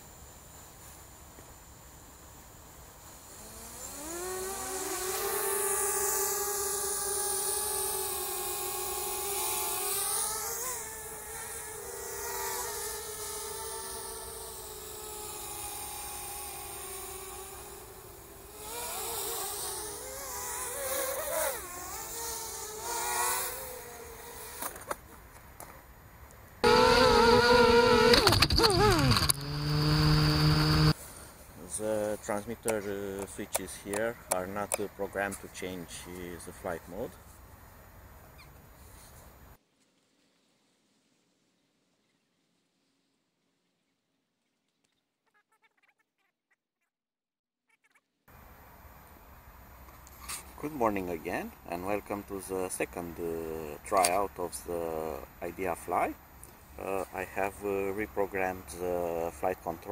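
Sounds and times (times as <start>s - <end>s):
drone motors buzzing whine: 3.0s - 24.9s, 26.6s - 31.0s
loud steady tones: 26.6s - 31.0s.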